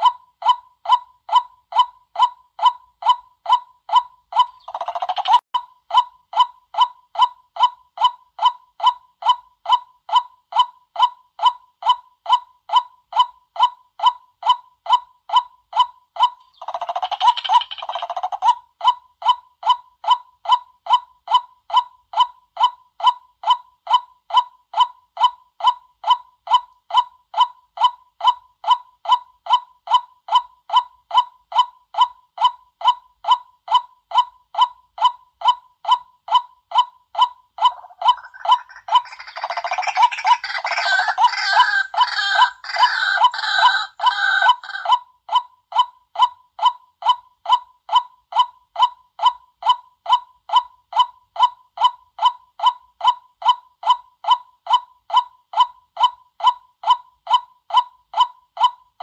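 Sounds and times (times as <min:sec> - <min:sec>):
waterhen calling: 0:37.6 - 0:44.9.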